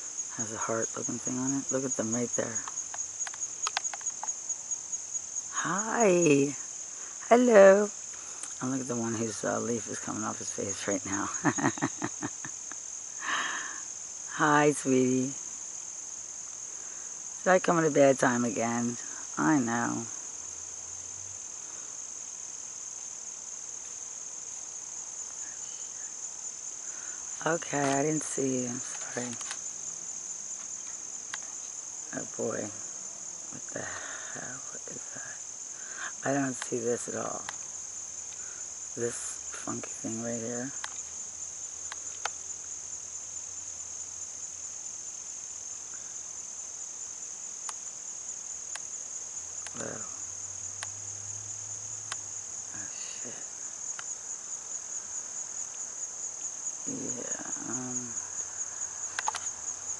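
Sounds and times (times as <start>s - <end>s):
insects trilling: 0.0s - 59.9s
faint clicks: 2.6s - 4.4s, 40.8s - 41.2s, 41.8s - 42.4s, 47.6s - 47.8s, 50.8s - 51.0s, 53.9s - 54.1s, 59.1s - 59.6s.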